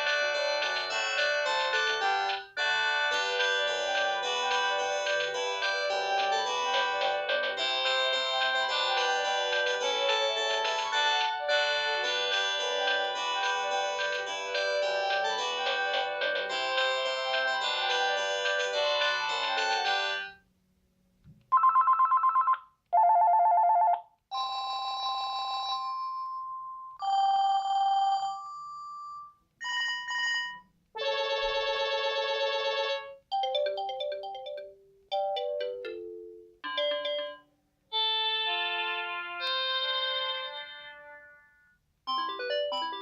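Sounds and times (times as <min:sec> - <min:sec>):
phone ringtones: 0:21.5 - 0:25.9, 0:29.6 - 0:38.7.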